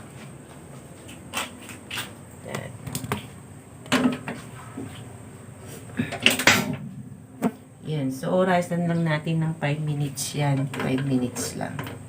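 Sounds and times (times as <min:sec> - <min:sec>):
kitchen items knocking and clicking: 0:03.9 - 0:04.4.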